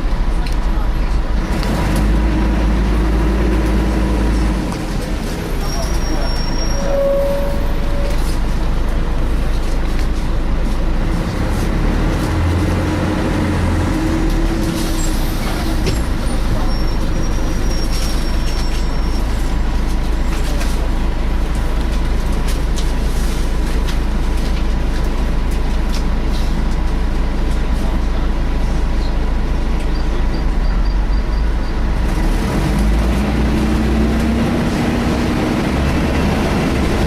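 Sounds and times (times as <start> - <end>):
bus diesel engine running: 0.0 - 37.0
road rumble: 0.0 - 37.0.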